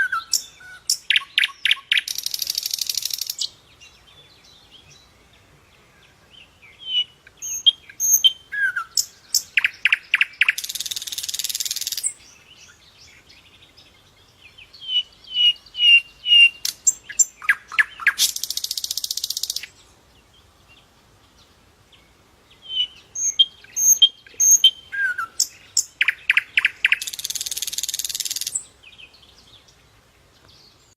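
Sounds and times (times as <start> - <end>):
songbird singing: 0.0 - 30.9.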